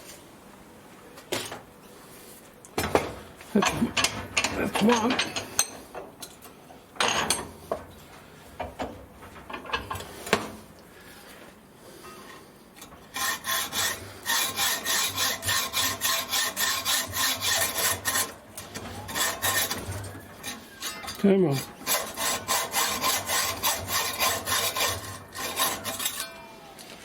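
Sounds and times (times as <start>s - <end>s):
hacksaw cutting metal bar: 13.1s - 26.3s.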